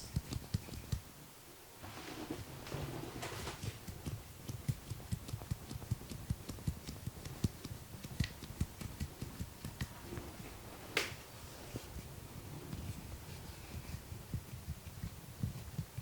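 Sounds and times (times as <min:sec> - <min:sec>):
hands tapping and patting: 0:00.0 - 0:01.0, 0:03.3 - 0:10.4, 0:11.0 - 0:11.2.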